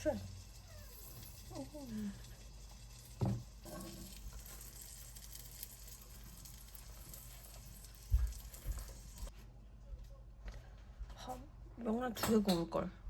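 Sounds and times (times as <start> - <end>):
roe sizzling in a pan: 0.0 - 9.3
knock: 3.2 - 3.4.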